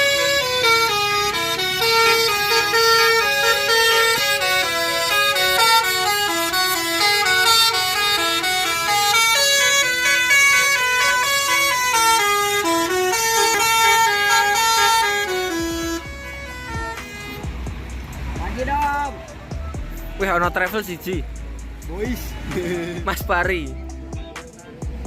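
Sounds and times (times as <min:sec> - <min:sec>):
musical bus horn melody: 0:00.0 - 0:20.0.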